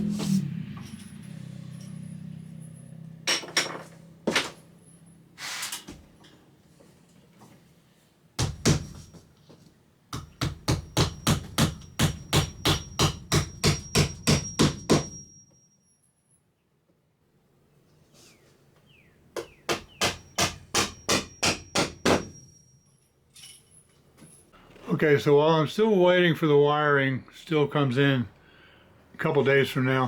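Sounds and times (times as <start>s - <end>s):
hammer striking nails: 8.4s - 9.2s, 10.1s - 15.3s, 19.4s - 22.6s.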